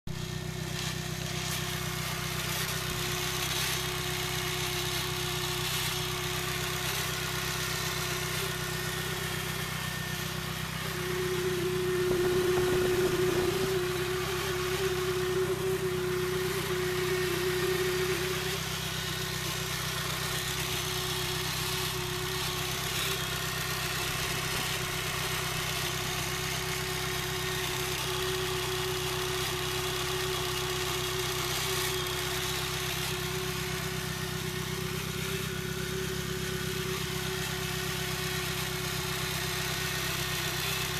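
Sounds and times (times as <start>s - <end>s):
car engine idling: 0.1s - 40.9s
steady high tone: 10.7s - 21.2s.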